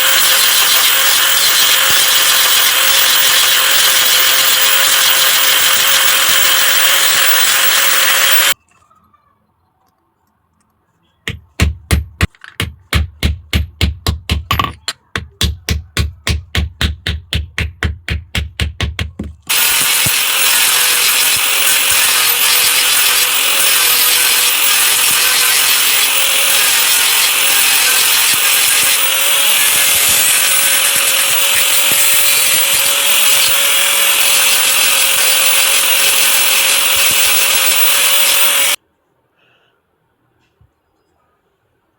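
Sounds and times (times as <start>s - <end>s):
rasping power tool: 0.0s - 8.6s, 15.4s - 38.8s.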